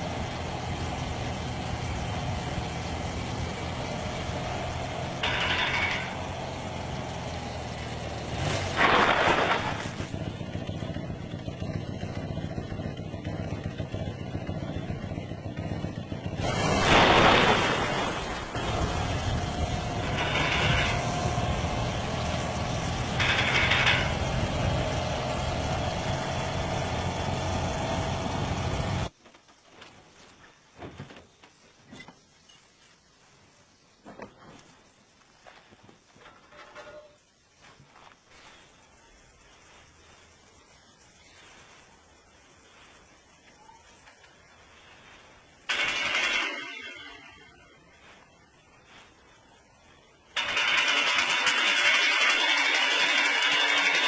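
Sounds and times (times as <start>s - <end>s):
motorcycle engine running: 0.0s - 29.1s, 44.8s - 47.2s, 50.4s - 54.0s.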